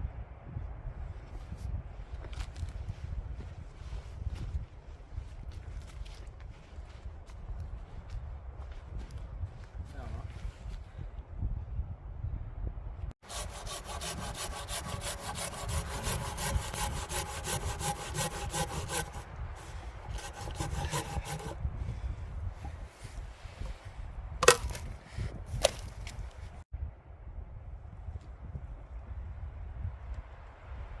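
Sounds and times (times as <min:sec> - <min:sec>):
wind rumble on microphone: 0:00.0 - 0:13.2, 0:13.9 - 0:31.0
hand saw cutting log: 0:13.2 - 0:21.7, 0:24.4 - 0:25.9
wood knocks: 0:24.4 - 0:24.9.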